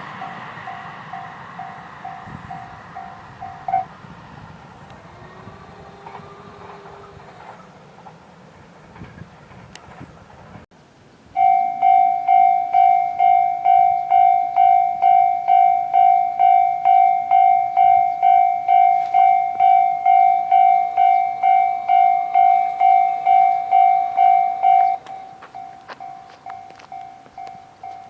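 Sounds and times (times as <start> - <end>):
level crossing bell dinging: 11.4 - 28.0.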